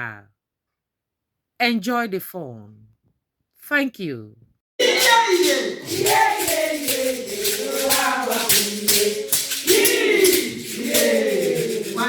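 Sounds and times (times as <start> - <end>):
person singing: 4.8 - 12.0
rattling percussion beat: 4.8 - 12.0.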